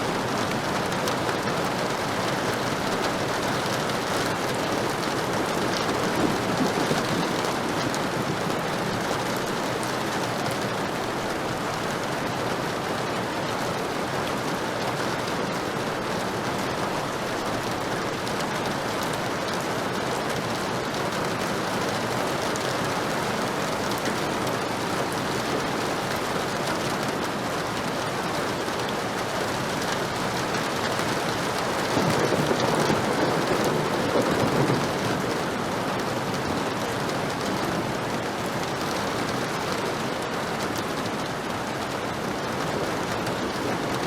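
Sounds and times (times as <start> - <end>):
heavy rain: 0.0 - 44.0
low rumble of thunder: 2.8 - 9.1, 31.2 - 37.9.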